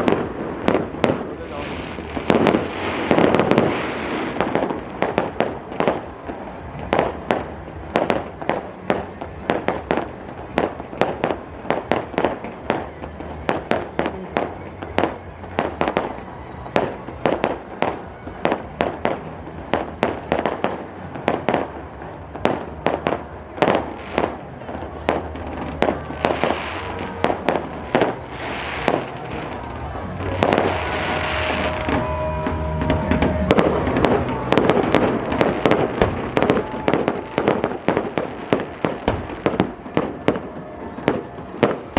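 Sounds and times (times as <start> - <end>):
fireworks bangs: 0.0 - 41.9.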